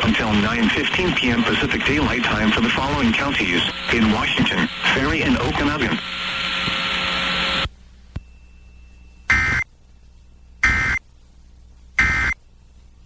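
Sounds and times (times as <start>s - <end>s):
harsh buzzy data burst: 9.3s - 9.7s, 10.6s - 11.0s, 12.0s - 12.4s.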